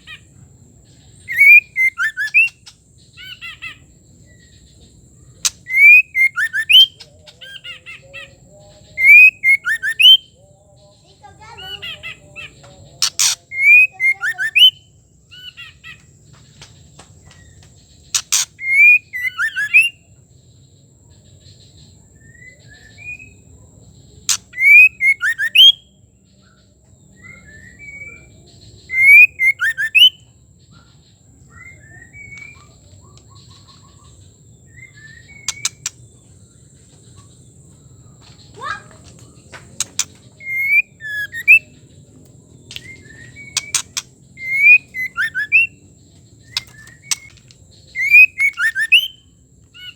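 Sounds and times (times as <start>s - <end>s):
bird whistling and chirping: 0.9s - 4.7s, 5.4s - 10.4s, 11.3s - 16.0s, 17.2s - 20.0s, 22.2s - 23.5s, 24.2s - 26.0s, 27.1s - 30.3s, 31.5s - 36.0s, 38.5s - 42.0s, 42.6s - 49.9s
sharp clicks: 13.0s - 13.4s, 18.2s - 18.5s, 39.6s - 40.2s, 46.5s - 47.6s.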